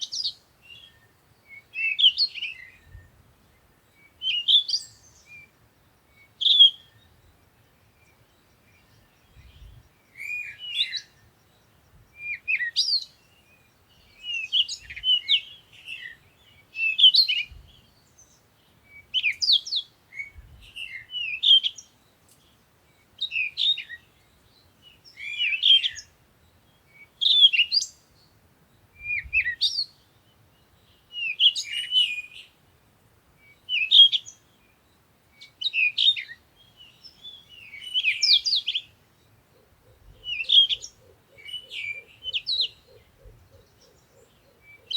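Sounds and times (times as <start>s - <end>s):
songbird warbling: 35.4s - 44.9s.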